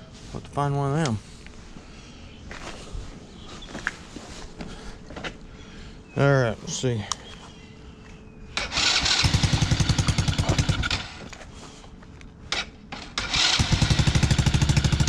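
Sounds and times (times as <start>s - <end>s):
small engine running: 8.6s - 11.2s, 13.2s - 15.0s
electric starter cranking: 8.6s - 11.3s, 12.5s - 15.0s.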